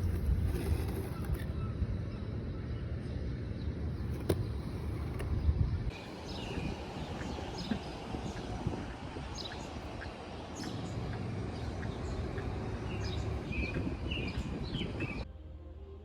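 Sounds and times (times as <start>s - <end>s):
birds chirping: 3.6s - 15.2s.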